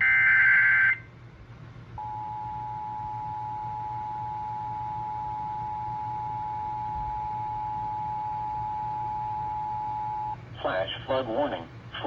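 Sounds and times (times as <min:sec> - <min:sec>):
two-tone alarm tone: 0:00.0 - 0:01.1, 0:02.0 - 0:10.4.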